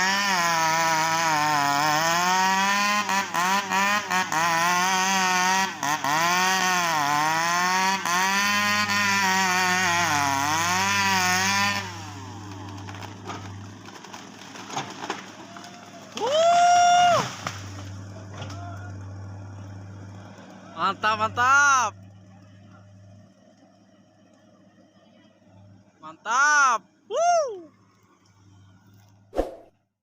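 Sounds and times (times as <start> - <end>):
chainsaw cutting wood: 0.0 - 21.8
low engine hum: 9.6 - 26.1, 26.8 - 29.7.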